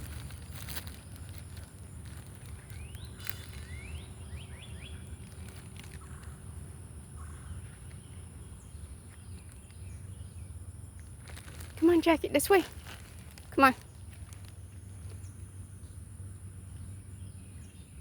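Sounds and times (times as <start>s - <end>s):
low outdoor rumble: 0.0s - 18.0s
bird chirping: 2.0s - 6.4s.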